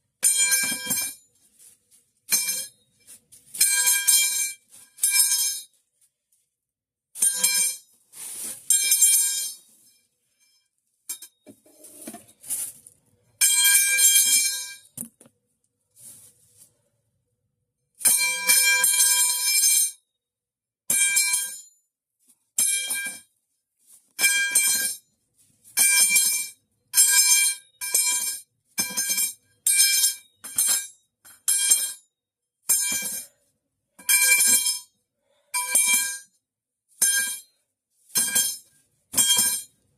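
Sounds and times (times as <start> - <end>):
metal pipe clanging: 2.3 - 2.8, 32.7 - 33.4, 38.1 - 39.7.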